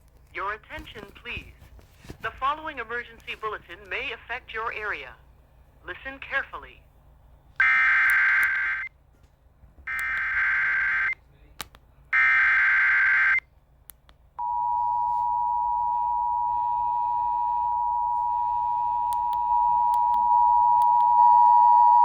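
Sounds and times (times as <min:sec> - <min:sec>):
data tone burst: 0:14.4 - 0:22.0
two-tone alert signal: 0:14.4 - 0:22.0.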